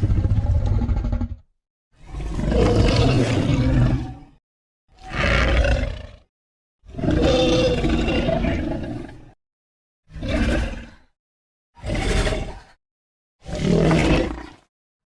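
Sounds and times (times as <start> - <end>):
monster roars: 2.2 - 4.4, 5.0 - 6.3, 6.9 - 9.1, 13.4 - 14.6.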